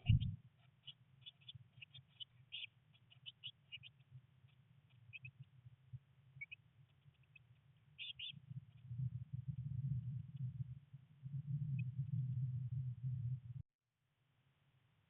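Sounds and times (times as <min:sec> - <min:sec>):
low rumble: 0:00.0 - 0:00.4
nestlings chirping: 0:00.0 - 0:00.4.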